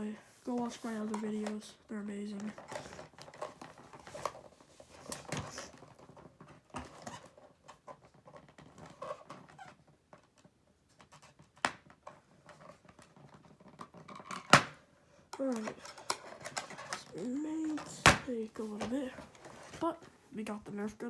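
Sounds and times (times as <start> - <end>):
packaging rustling: 15.4 - 20.2.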